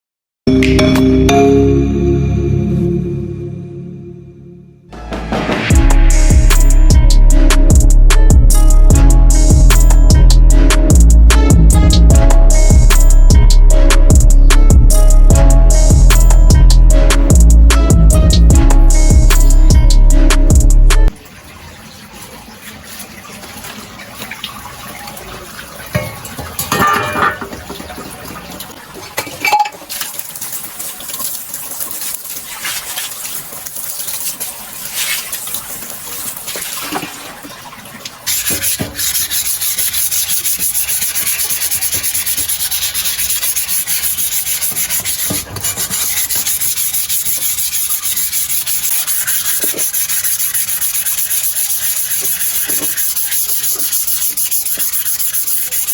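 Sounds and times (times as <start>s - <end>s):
sanding metal frame: 38.3s - 55.9s.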